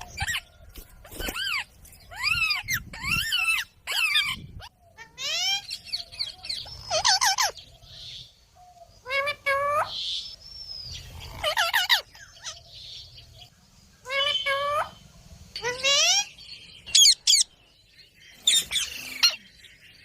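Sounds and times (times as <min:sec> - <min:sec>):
parrot squawking: 0:01.3 - 0:05.8, 0:06.6 - 0:07.6, 0:11.2 - 0:12.6, 0:14.0 - 0:15.0.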